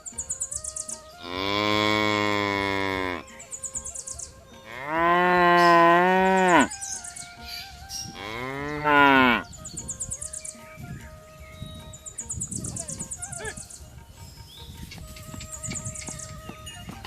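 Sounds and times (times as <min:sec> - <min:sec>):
cow mooing: 0:01.2 - 0:03.3, 0:04.6 - 0:06.7, 0:08.1 - 0:09.5.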